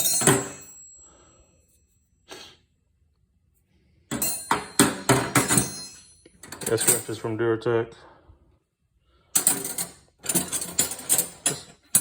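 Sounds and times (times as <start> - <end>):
wrenches clinking together: 0.0 - 0.7, 4.1 - 7.2, 9.4 - 12.0.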